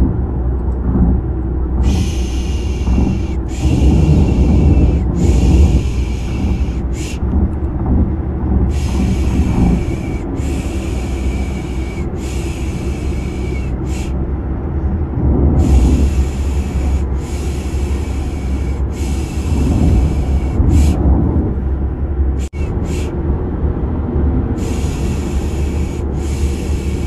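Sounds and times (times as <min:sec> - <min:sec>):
car rumble sound effect: 0:00.0 - 0:27.0
person shushing: 0:01.8 - 0:07.2.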